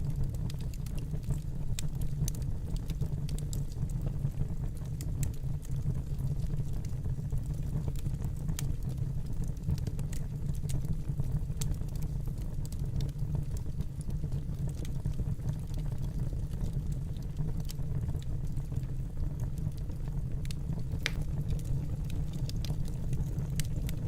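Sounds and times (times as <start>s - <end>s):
fire crackling and popping: 0.0s - 24.0s
fire flames rumbling: 0.0s - 24.0s.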